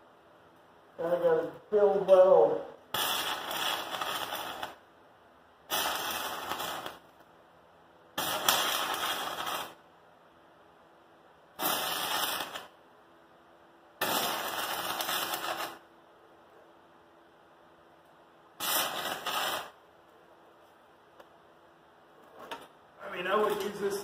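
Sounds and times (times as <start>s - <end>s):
arc welding crackle: 1.2s - 4.9s, 5.6s - 7.3s, 8.1s - 9.9s, 11.5s - 12.8s, 14.0s - 15.9s, 18.5s - 19.8s, 23.2s - 24.0s.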